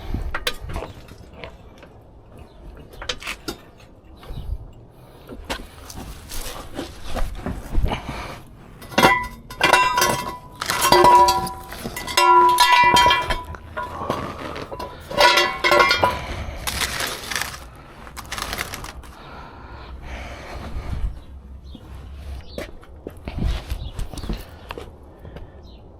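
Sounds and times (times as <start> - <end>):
metal objects clanking: 8.8 - 17.0.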